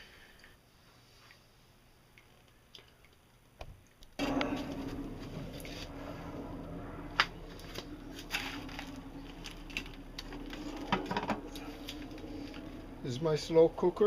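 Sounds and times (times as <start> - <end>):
steady low hum: 4.2 - 14.0.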